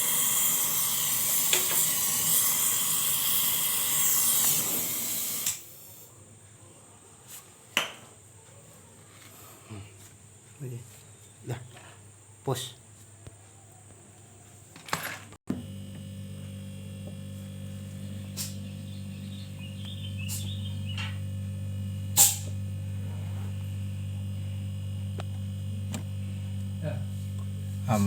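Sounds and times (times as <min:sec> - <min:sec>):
refrigerator compressor hum: 0:15.5 - 0:28.0.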